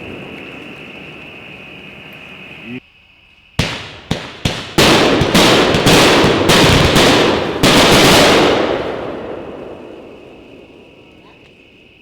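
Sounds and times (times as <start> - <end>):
fireworks cake launch shots: 3.6 - 11.6.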